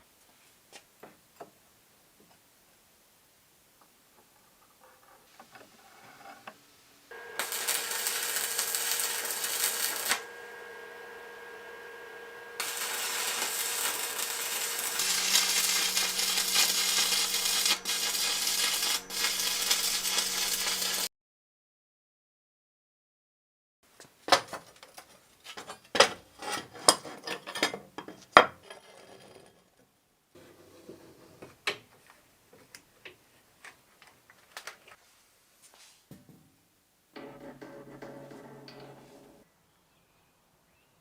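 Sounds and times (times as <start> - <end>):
electric power tool running: 7.1 - 21.1.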